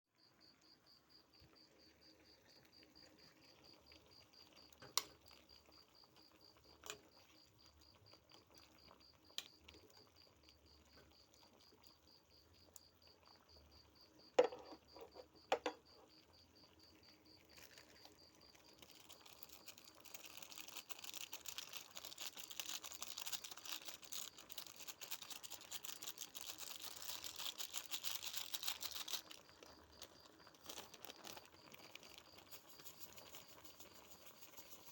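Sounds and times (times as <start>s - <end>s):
cricket chirping: 0.2s - 34.9s
kitchen knocks and clicks: 14.4s - 15.8s
steady hiss: 32.2s - 34.9s.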